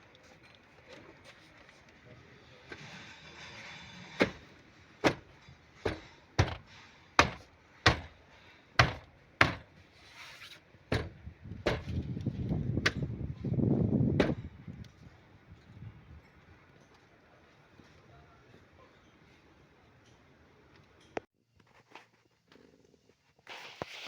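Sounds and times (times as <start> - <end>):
sharp knocks: 4.2 - 8.2, 8.8 - 9.7, 10.9 - 12.0, 14.2 - 14.5.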